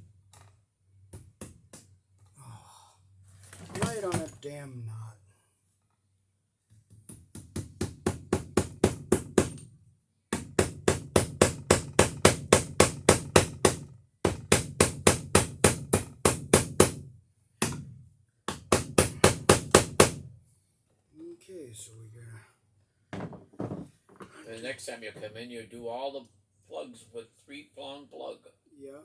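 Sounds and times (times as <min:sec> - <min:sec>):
hammer striking staple into wood: 0:07.1 - 0:09.7, 0:10.3 - 0:20.3.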